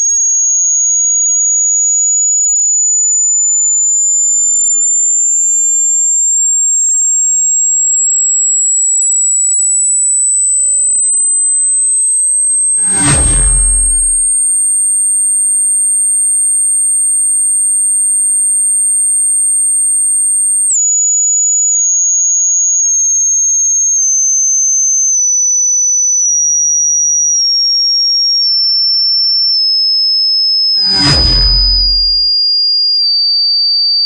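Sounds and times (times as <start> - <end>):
high-pitched sine tone: 12.8 - 14.3.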